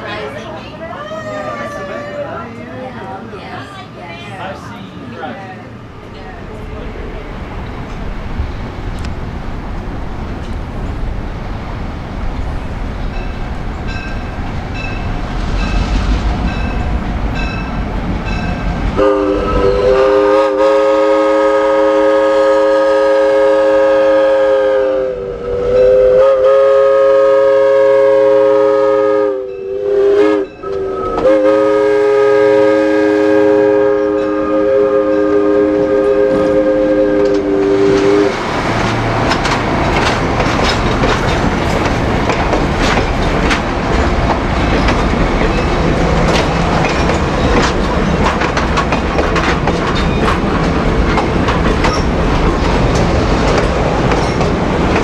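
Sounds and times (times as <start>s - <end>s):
train rumble and wheel clatter: 0.0s - 55.0s
locomotive air horn blasts: 19.0s - 38.3s.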